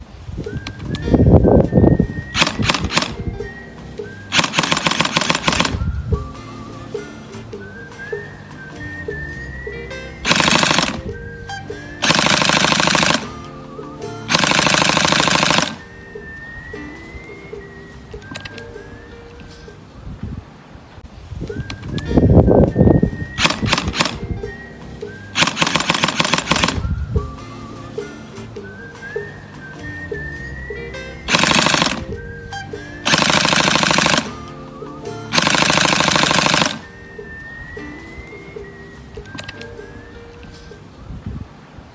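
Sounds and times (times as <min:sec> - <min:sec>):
background music: 0:00.5 - 0:20.2, 0:21.4 - 0:41.6
airsoft gun full-auto bursts: 0:02.4 - 0:03.2, 0:04.3 - 0:05.8, 0:10.2 - 0:11.1, 0:12.0 - 0:13.4, 0:14.3 - 0:15.9, 0:23.4 - 0:24.2, 0:25.3 - 0:26.8, 0:31.3 - 0:32.2, 0:33.0 - 0:34.4, 0:35.3 - 0:36.9.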